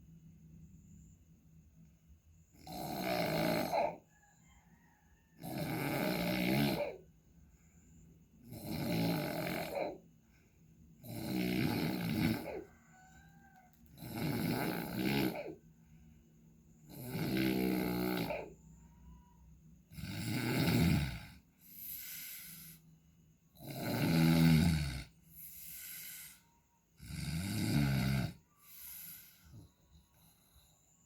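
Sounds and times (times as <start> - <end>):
person snoring loudly: 2.5 - 4.1, 5.4 - 7.1, 8.4 - 10.0, 11.0 - 12.9, 13.9 - 15.6, 16.8 - 18.7, 19.9 - 22.8, 23.5 - 29.7.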